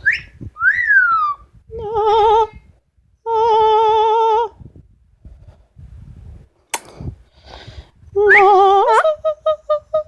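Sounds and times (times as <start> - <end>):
sharp click: 6.7 - 7.1.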